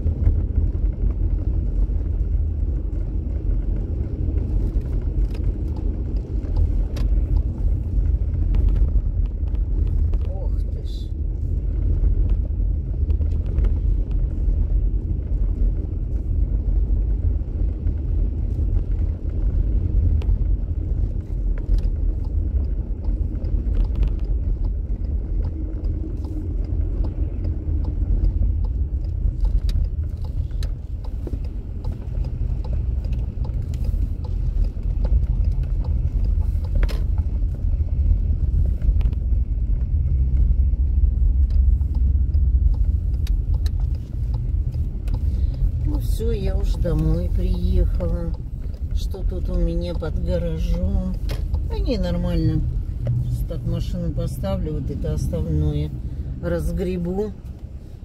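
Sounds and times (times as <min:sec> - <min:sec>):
car engine and tyres rumbling: 0:00.0 - 0:58.0.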